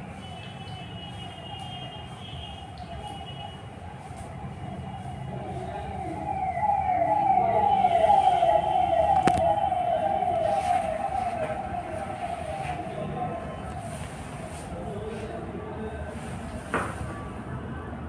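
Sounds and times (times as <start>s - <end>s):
siren fast rising wail: 4.6s - 14.8s.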